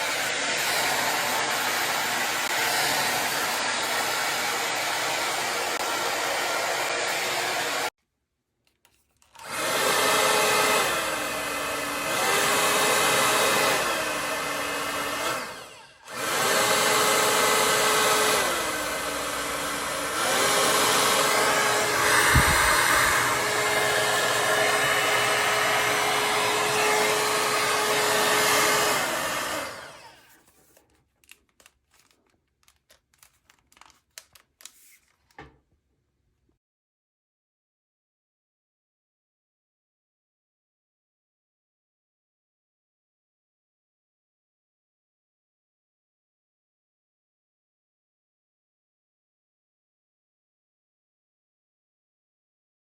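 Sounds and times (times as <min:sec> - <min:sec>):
hair dryer brush fan whining: 0:00.0 - 0:07.9, 0:09.4 - 0:30.8.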